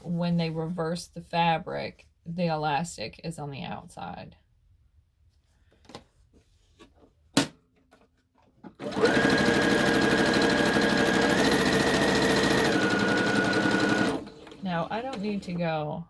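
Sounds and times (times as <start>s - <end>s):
electric sewing machine running: 8.8s - 15.6s.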